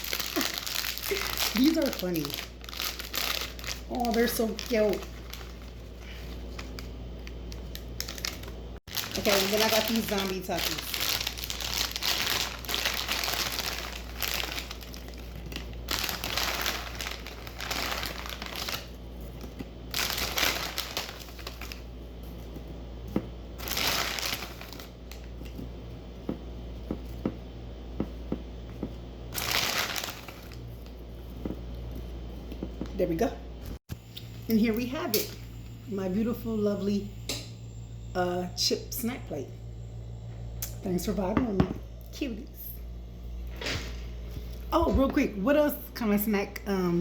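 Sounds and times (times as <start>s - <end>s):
plastic chip bag crinkling: 0.0s - 21.9s, 23.6s - 25.5s, 29.3s - 30.9s.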